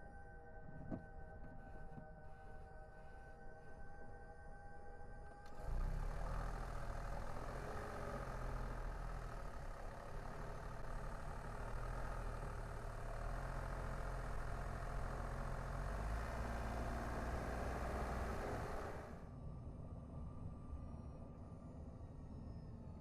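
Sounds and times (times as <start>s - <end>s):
car engine hum: 5.5s - 19.3s
tyres rumbling on road: 5.6s - 19.2s.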